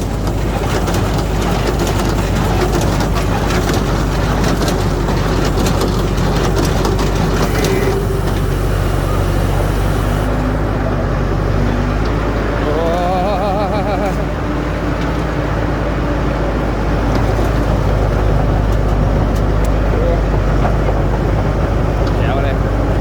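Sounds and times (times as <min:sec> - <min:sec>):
baler mechanical knocks and clatters: 0:00.0 - 0:10.4, 0:17.0 - 0:23.0
hay baler engine drone: 0:00.0 - 0:23.0.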